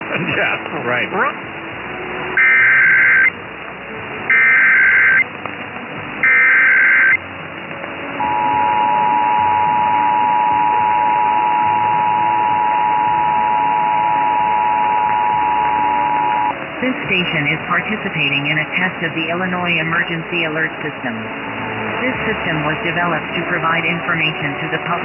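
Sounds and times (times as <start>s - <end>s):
buzzy digital data tones: 2.4s - 3.3s, 4.3s - 5.2s, 6.2s - 7.2s, 8.2s - 16.5s
two-tone attention signal: 2.4s - 3.3s, 4.3s - 5.2s, 6.2s - 7.2s, 8.2s - 16.5s.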